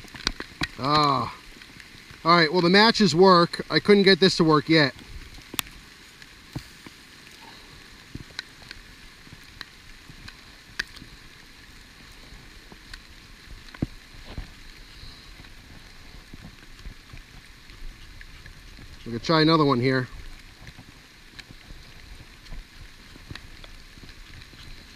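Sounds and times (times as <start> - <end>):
rain hissing: 0.0 - 24.9.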